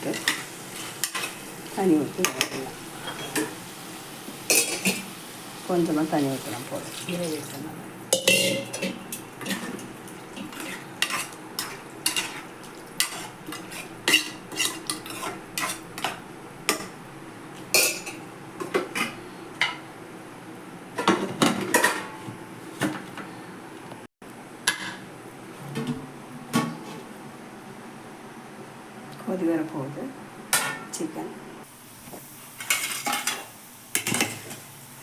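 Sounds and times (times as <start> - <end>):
spoon clinking and scraping pot: 2.2 - 3.6, 4.5 - 5.0, 8.1 - 16.9.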